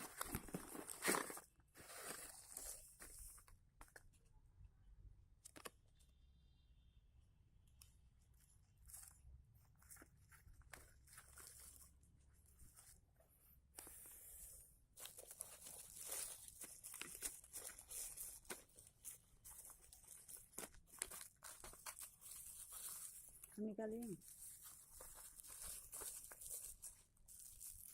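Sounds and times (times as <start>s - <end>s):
packaging clicks and rustles: 0.0s - 4.2s, 8.6s - 13.0s, 14.9s - 27.9s
packaging tearing or crinkling: 15.1s - 27.9s.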